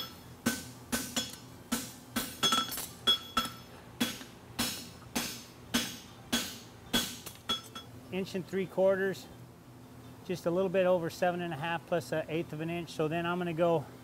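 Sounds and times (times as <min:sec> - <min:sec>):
hammer striking steel on anvil: 0:00.0 - 0:07.9.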